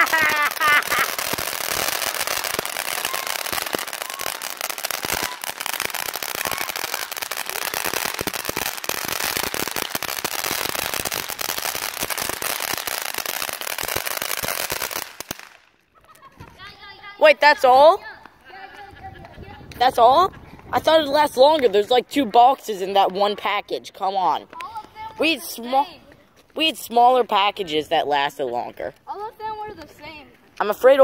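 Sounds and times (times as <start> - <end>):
firework crackling and hissing: 0.0 - 16.7.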